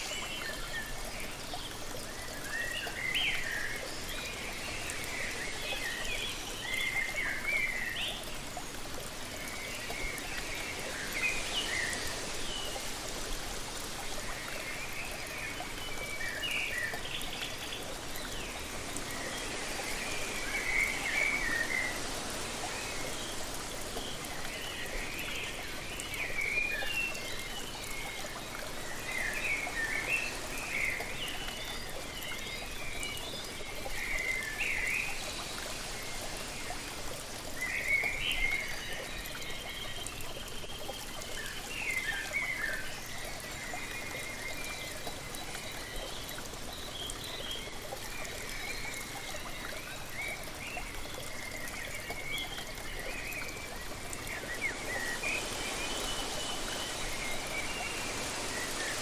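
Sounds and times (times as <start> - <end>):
songbirds chirping: 0.0 - 59.0
waterfall rushing: 16.8 - 31.9, 52.9 - 59.0.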